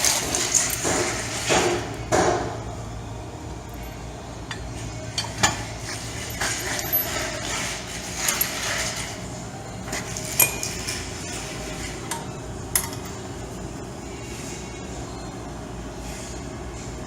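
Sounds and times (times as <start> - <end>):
steel pins clinking: 0.0 - 2.5, 3.5 - 9.2, 9.9 - 13.3
low steady hum: 0.0 - 17.0.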